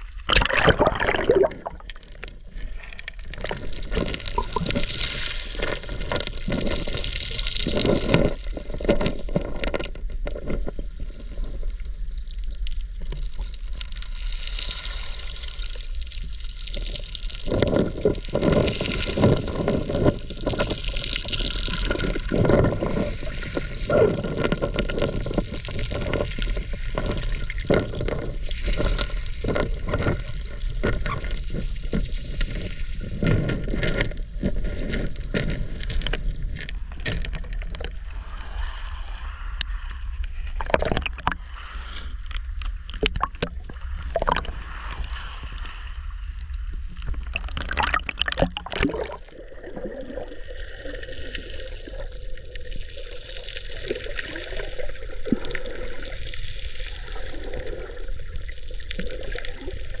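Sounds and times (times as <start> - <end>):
sea water sloshing and gurgling: 0.0 - 60.0
sharp clicks and pops: 0.1 - 10.8, 32.4 - 38.0, 39.6 - 41.4, 42.0 - 45.0, 46.3 - 49.3.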